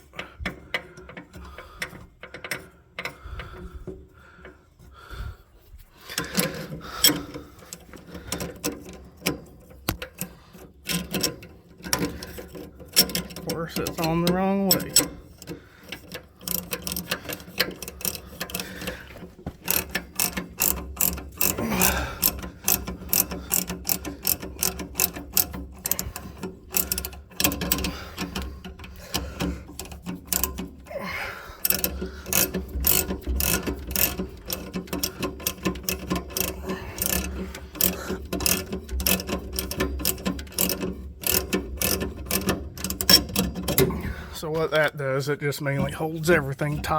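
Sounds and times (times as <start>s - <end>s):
ratchet wrench clicking: 6.1s - 30.9s, 31.6s - 44.0s.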